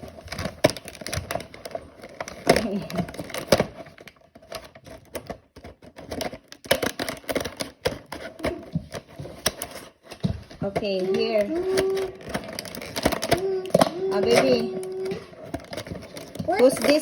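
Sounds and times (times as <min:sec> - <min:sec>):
plastic packaging crackling: 0:00.0 - 0:17.0.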